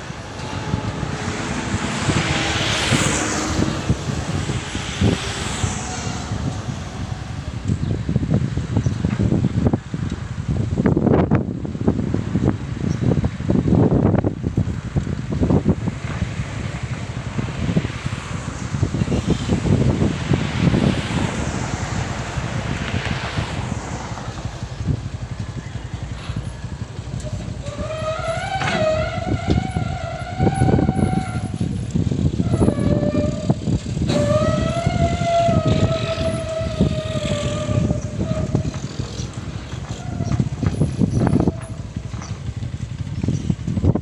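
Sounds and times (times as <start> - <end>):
high whine: 0.0 - 8.4
diesel engine under load: 0.0 - 44.0.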